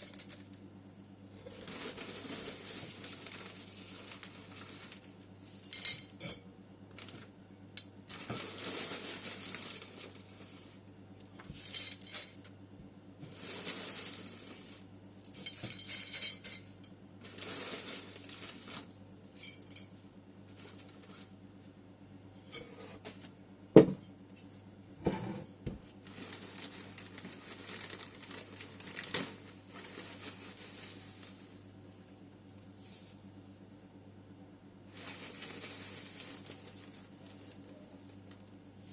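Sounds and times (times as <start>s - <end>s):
soil rustling and scraping: 1.4s - 5.6s, 8.1s - 10.8s, 13.2s - 16.2s, 17.2s - 19.0s, 34.9s - 38.2s.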